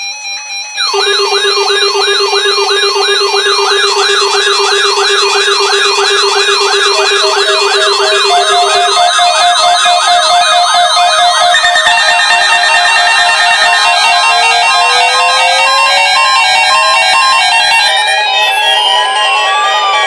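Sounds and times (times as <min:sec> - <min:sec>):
electronic siren yelping: 0:00.0 - 0:20.0
steady electronic tone: 0:00.8 - 0:16.0
stepping electronic beep: 0:00.8 - 0:20.0.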